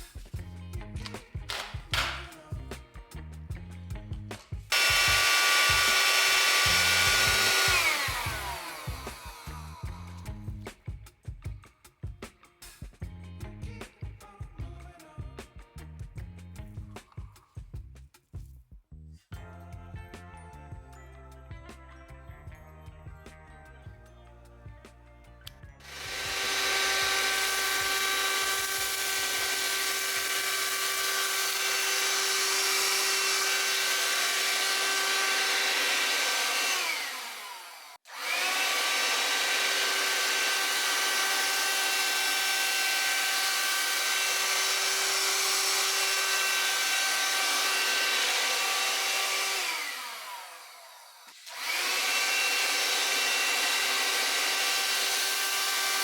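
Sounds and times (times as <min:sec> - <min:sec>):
hand-held vacuum cleaner running: 0:04.7 - 0:09.8, 0:25.8 - 0:56.0.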